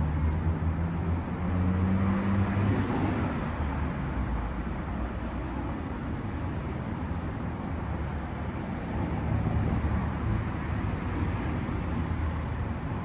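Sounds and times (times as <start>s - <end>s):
low traffic noise: 0.0s - 13.0s
passing vehicle engine rumble: 0.0s - 13.0s
faint sharp ticks: 1.6s - 2.6s, 3.2s - 4.4s.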